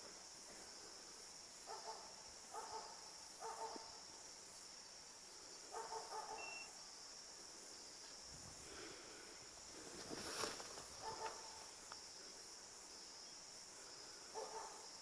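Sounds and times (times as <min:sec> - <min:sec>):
faint dog barking: 0:01.6 - 0:04.0, 0:05.7 - 0:06.6, 0:11.0 - 0:11.7, 0:14.3 - 0:14.9.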